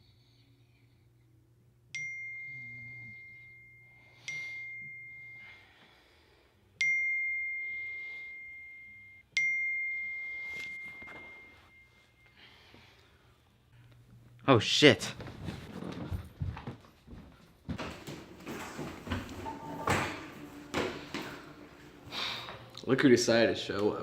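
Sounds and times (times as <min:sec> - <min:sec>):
bright bell-like chime: 0:02.0 - 0:05.8, 0:06.8 - 0:12.6.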